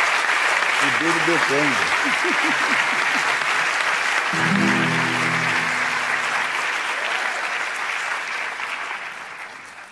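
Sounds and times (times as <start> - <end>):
audience applauding: 0.0 - 9.9
instrument chord ringing: 4.4 - 6.7.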